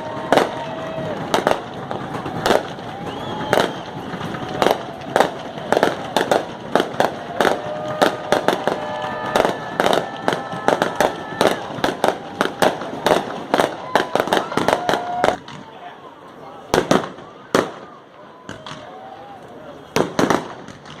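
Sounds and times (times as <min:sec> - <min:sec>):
fireworks bangs: 0:00.0 - 0:15.8, 0:16.6 - 0:21.0.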